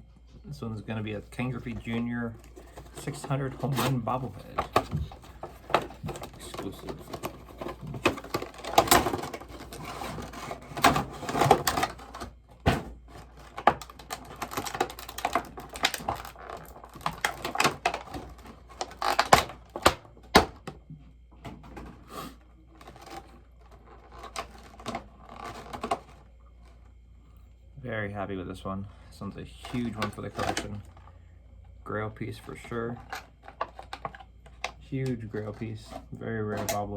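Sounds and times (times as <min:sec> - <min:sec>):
packaging clicks and rustling: 0:01.3 - 0:20.7, 0:22.7 - 0:26.9, 0:29.7 - 0:31.0.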